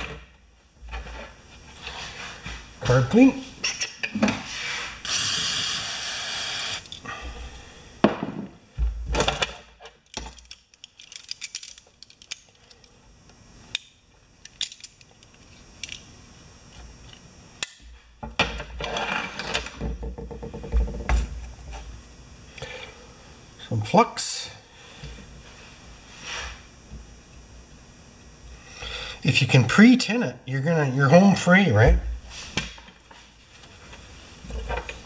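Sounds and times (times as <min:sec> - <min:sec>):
aerosol can spraying: 0:05.0 - 0:06.8.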